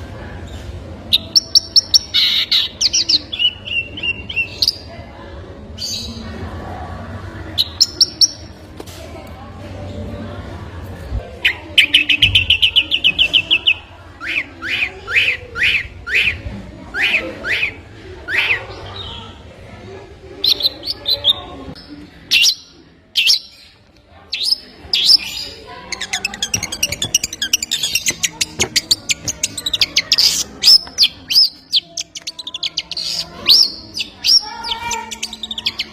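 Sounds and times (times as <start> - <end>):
songbird singing: 11.4 - 19.2, 20.4 - 35.9.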